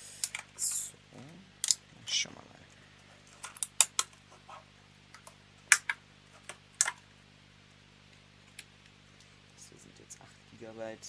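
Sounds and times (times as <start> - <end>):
plastic packaging clicking: 3.3 - 4.2, 5.1 - 7.0.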